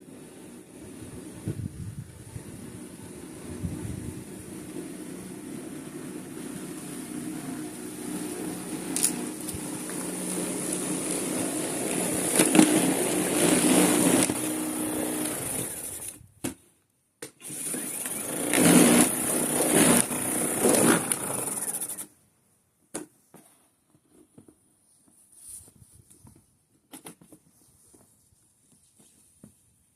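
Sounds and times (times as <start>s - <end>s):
snow rushing: 0.1s - 16.2s, 17.7s - 22.0s
snow thrower motor whining: 2.1s - 16.2s, 17.4s - 22.1s.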